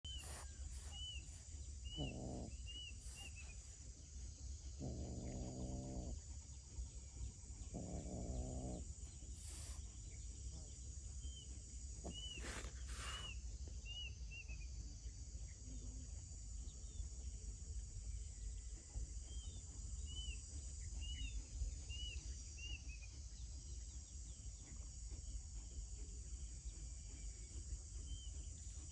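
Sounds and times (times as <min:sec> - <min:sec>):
insect-like hiss: 0:00.1 - 0:06.4, 0:07.7 - 0:10.3, 0:11.2 - 0:14.6.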